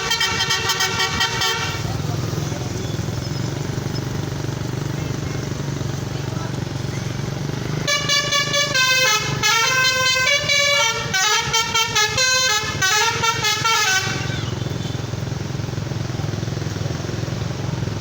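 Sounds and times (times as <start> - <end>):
bus horn playing a melody: 0.0 - 2.4, 7.8 - 15.2
low engine rumble: 0.0 - 18.0.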